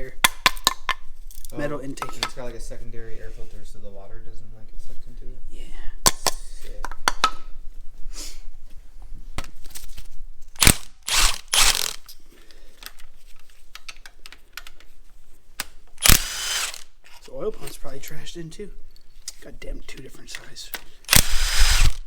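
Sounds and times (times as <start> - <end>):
ratchet clicking: 10.6 - 12.1, 16.0 - 16.9, 21.1 - 22.0.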